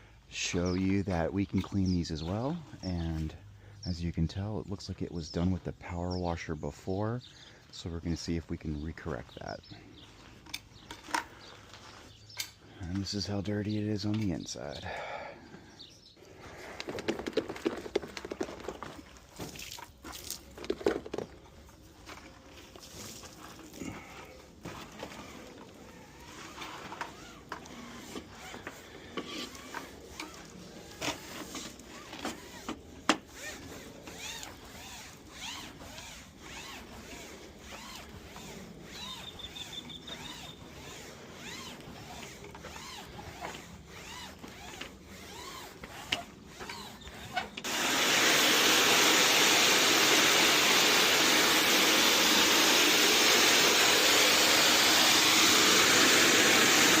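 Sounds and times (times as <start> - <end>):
loud steady blower: 23.8 - 57.0
brush scrubbing fabric: 24.6 - 47.4.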